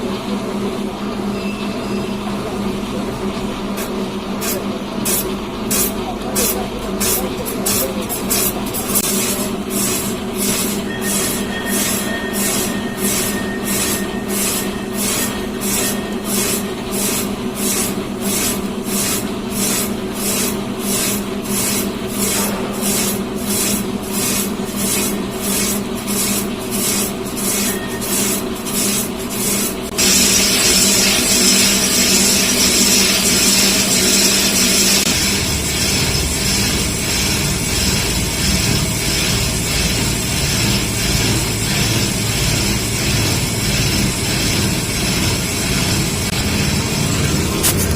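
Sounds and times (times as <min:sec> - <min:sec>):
lathe machine hum: 0:00.0 - 0:47.9
rhythmic scraping: 0:04.4 - 0:47.9.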